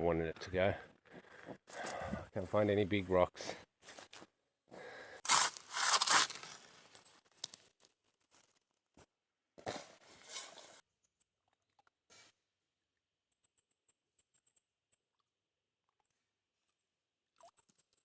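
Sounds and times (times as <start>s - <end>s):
digging and scraping gravel: 5.2s - 8.6s, 9.7s - 10.8s.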